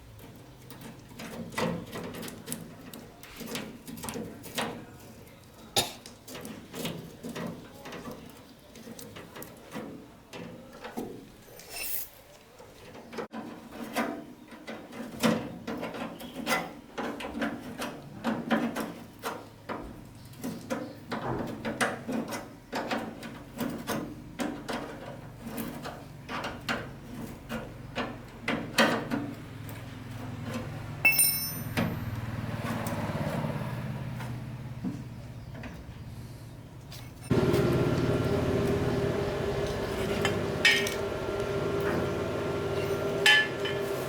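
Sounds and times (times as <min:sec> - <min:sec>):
tools and parts clattering: 0:06.0 - 0:19.4, 0:20.3 - 0:32.0, 0:36.8 - 0:41.4, 0:42.0 - 0:44.0.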